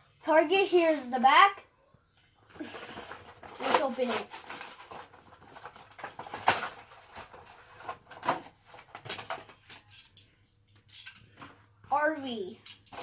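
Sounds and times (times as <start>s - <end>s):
plastic packaging crackling: 2.6s - 10.1s
cardboard packaging torn open: 3.0s - 8.5s.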